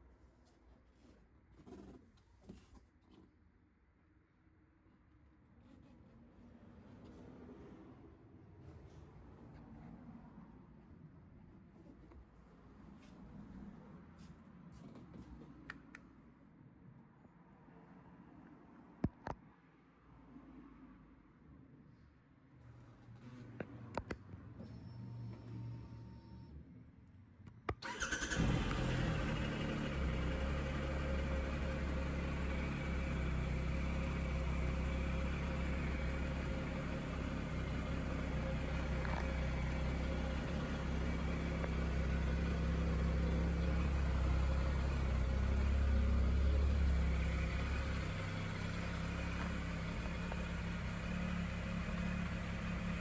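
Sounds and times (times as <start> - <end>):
motorcycle engine starting and idling: 27.7 - 53.0.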